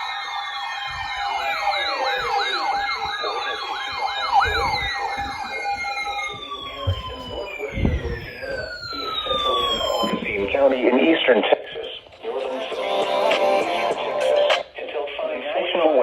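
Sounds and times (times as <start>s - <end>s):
steady siren tone: 0.0s - 11.3s
siren wails: 0.0s - 11.4s, 12.2s - 14.6s
siren yelp: 0.0s - 14.6s.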